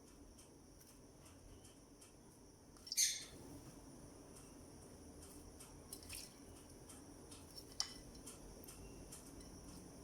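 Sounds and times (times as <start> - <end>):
lovebird chirp: 2.8 - 3.4.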